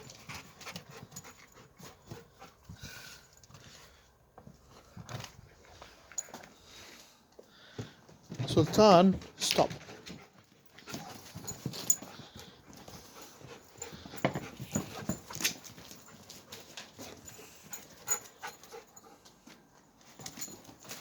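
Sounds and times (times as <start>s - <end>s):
dogs panting: 0.0s - 3.7s, 8.3s - 19.7s
dogs scuffling in play: 8.2s - 21.0s.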